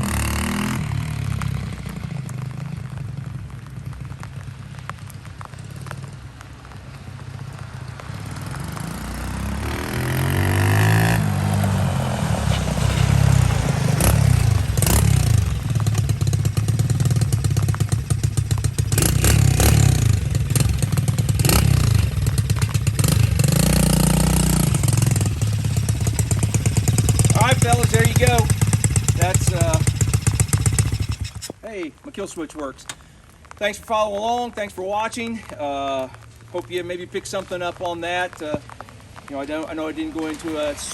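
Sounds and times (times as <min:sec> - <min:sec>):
motorcycle engine revving: 0:00.0 - 0:06.3, 0:07.2 - 0:31.6.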